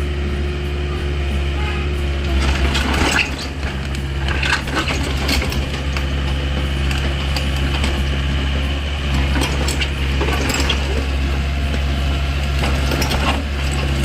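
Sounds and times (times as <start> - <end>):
excavator diesel engine running: 0.0 - 14.0.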